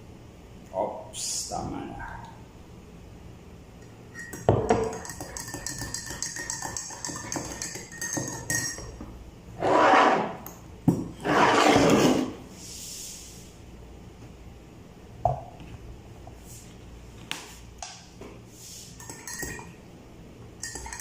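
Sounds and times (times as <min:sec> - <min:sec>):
spoon clinking against cup: 0:03.8 - 0:09.0, 0:19.0 - 0:19.8, 0:20.6 - 0:21.0.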